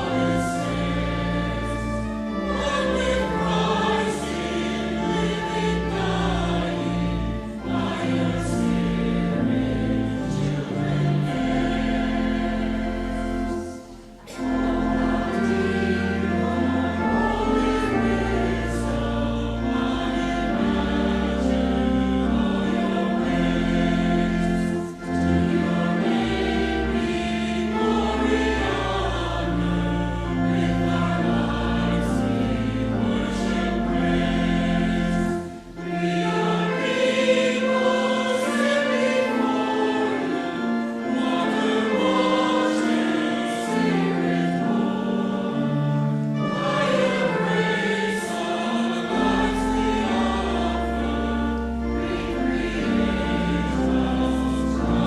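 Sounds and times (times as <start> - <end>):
choir singing a hymn: 0.0 - 55.0
singers breathing: 13.8 - 14.4.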